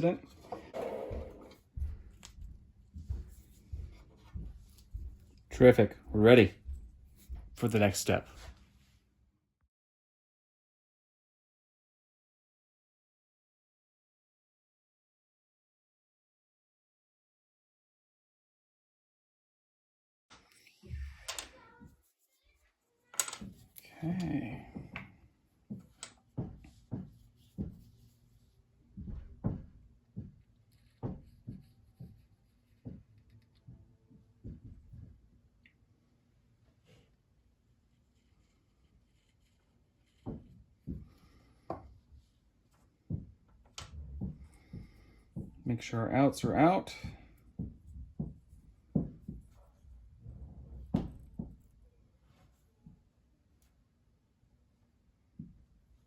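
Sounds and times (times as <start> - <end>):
wooden pieces knocking on workbench: 23.2 - 23.7.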